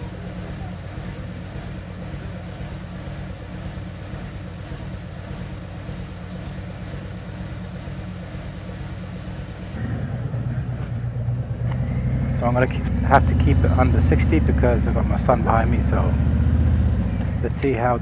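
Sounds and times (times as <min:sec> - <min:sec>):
motorcycle engine idling: 0:00.0 - 0:18.0
motorcycle engine revving: 0:00.0 - 0:18.0.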